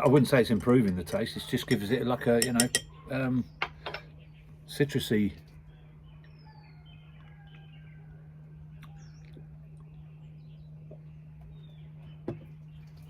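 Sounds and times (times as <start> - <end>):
steady low hum: 0.0 - 13.0
faint bird chirps: 5.4 - 13.0.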